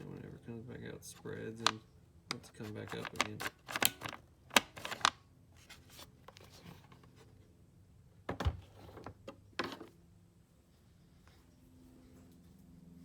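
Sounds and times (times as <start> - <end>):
plastic clicks and rubbing: 1.6 - 5.1.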